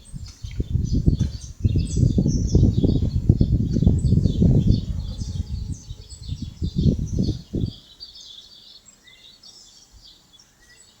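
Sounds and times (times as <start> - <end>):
birds chirping: 0.0 - 11.0
low rumbling noise: 0.1 - 7.8.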